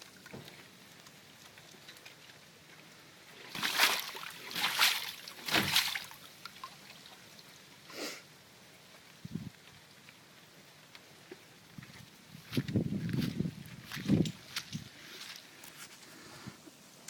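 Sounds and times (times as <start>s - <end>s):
footsteps splashing in water: 3.4s - 6.8s.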